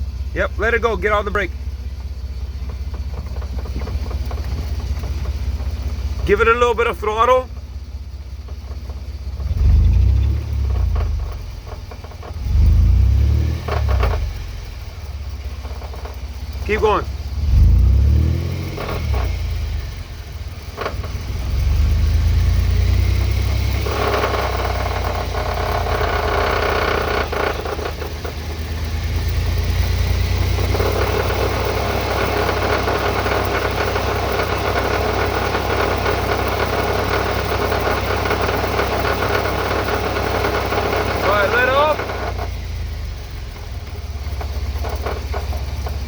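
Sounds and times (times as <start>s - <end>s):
low engine rumble: 0.0s - 46.0s
rough grinding noise: 20.7s - 46.0s.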